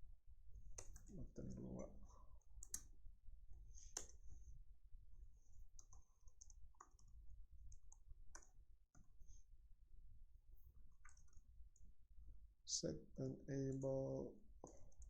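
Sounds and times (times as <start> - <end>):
computer keyboard keystrokes: 0.8 - 1.6, 2.6 - 2.9, 3.9 - 4.2, 5.8 - 9.1, 10.9 - 11.4, 14.6 - 15.0.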